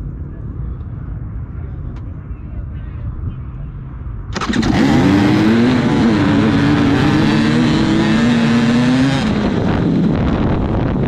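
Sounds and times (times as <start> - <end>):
racing engine revving hard: 4.4 - 9.9.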